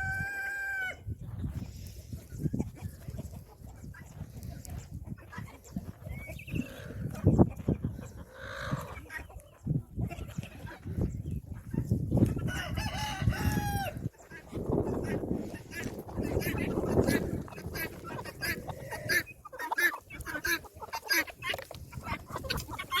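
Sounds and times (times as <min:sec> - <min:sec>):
rooster crowing: 0:00.0 - 0:01.0, 0:12.5 - 0:14.0
chickens clucking: 0:00.0 - 0:23.0.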